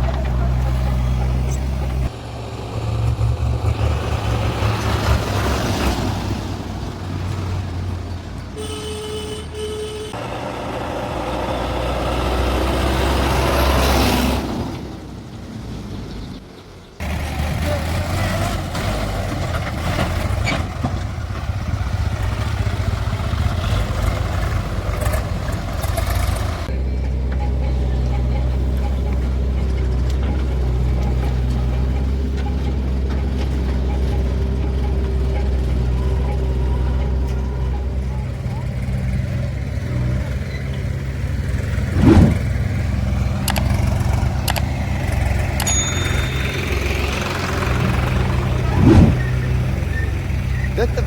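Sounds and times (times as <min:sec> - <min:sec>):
diesel engine running: 0:00.0 - 0:51.0
sharp clicks: 0:43.4 - 0:44.7.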